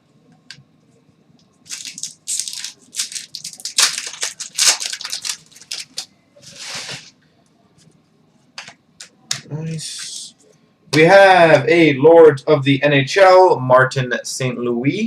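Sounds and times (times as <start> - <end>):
wrapper tearing and crinkling: 1.7 - 7.1.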